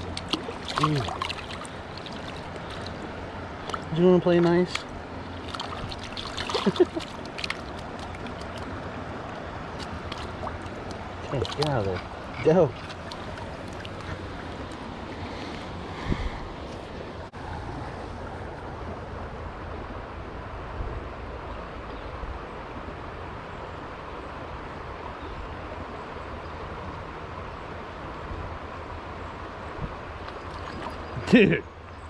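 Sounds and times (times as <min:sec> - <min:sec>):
water splash: 0:00.0 - 0:03.0, 0:03.6 - 0:08.7, 0:09.8 - 0:11.8
stream water flowing: 0:00.0 - 0:32.0.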